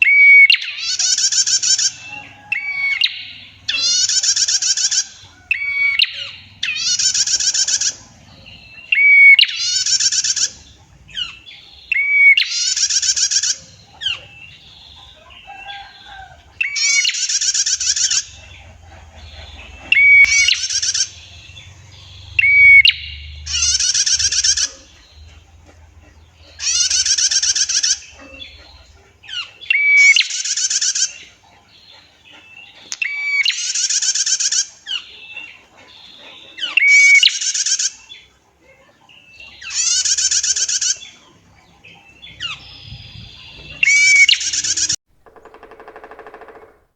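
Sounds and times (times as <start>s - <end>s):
faint bird chirps: 0.0s - 45.0s
bird buzzy trill: 19.5s - 25.0s.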